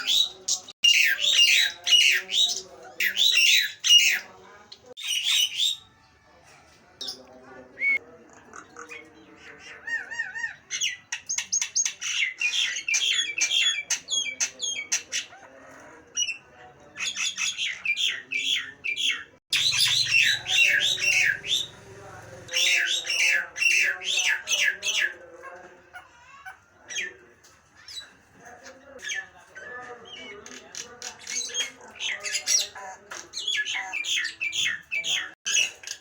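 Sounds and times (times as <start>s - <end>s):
myna whistling and squawking: 17.1s - 21.9s.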